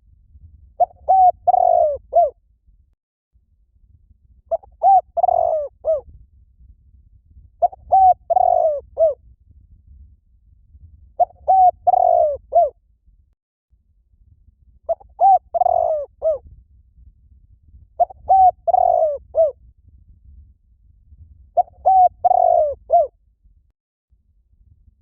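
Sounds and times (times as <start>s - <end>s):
dove cooing: 0.8s - 2.3s, 4.5s - 6.0s, 7.6s - 9.2s, 11.2s - 12.7s, 14.9s - 16.4s, 18.0s - 19.6s, 21.6s - 23.1s.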